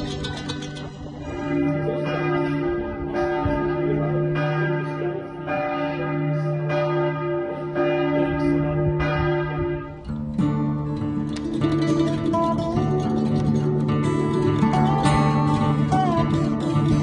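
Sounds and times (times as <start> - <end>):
church bell tolling: 0.8 - 12.4.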